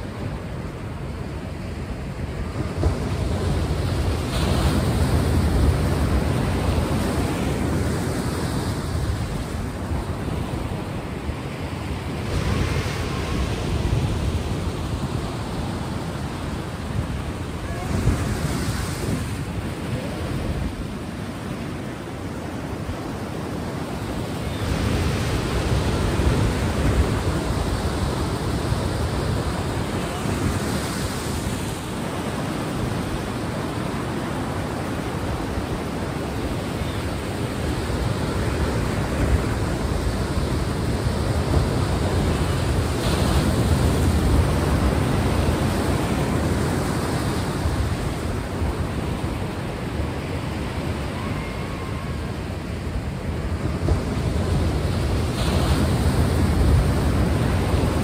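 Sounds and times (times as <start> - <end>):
sea waves washing on shore: 0.0 - 58.0.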